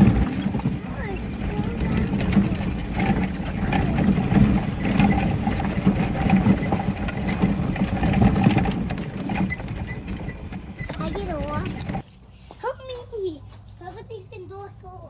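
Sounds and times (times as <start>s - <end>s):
rattles and clicks: 0.0s - 12.0s
vehicle engine running: 0.0s - 12.0s.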